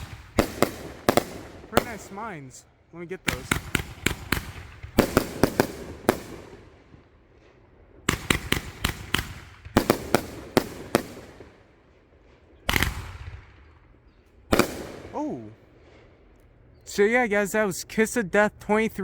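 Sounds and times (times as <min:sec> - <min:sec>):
firework crackle: 0:00.0 - 0:02.3
loud firework blast: 0:00.0 - 0:02.3, 0:03.3 - 0:06.9, 0:08.0 - 0:11.7, 0:12.7 - 0:13.7, 0:14.5 - 0:16.1
firework bangs: 0:00.0 - 0:13.8, 0:14.5 - 0:16.4.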